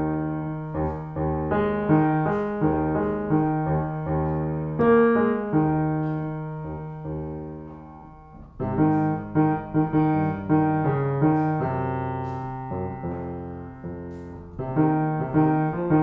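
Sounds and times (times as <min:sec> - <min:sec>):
piano playing slow chords: 0:00.0 - 0:16.0.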